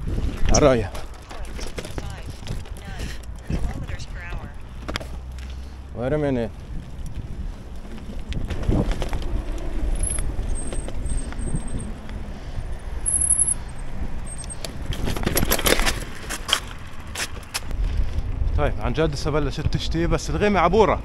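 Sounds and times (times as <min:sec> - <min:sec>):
bicycle rattling and knocking: 0:00.0 - 0:18.5
road noise: 0:00.0 - 0:21.0
wind rumbling on microphone: 0:00.0 - 0:21.0.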